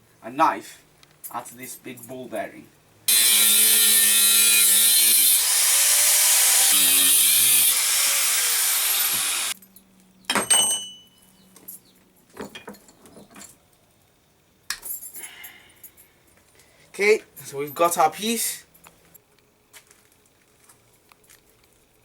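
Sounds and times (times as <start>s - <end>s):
power tool cutting steel: 3.1s - 9.6s
metallic clank ringing: 10.3s - 11.3s.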